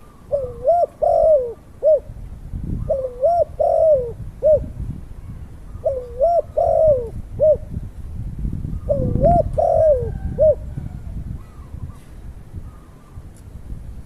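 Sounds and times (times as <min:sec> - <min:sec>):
bird calling: 0:00.0 - 0:02.1.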